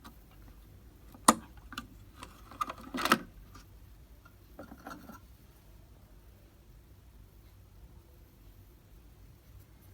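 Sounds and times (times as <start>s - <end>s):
computer hardware clicks and knocks: 1.1s - 3.7s.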